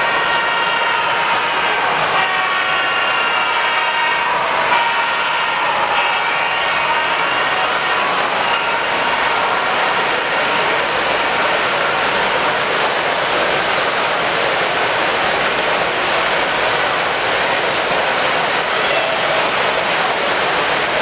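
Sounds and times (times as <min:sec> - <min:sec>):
crowd voices din: 0:15.0 - 0:21.0.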